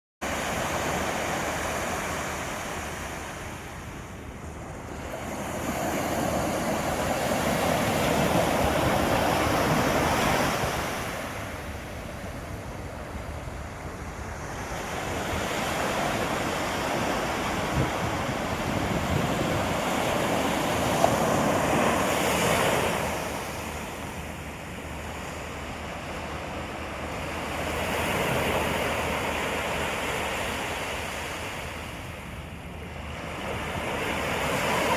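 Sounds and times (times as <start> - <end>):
sea waves breaking on beach: 0.2 - 34.9.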